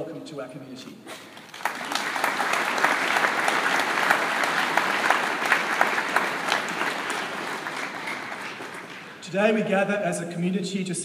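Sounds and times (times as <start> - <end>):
audience applauding: 1.4 - 9.2.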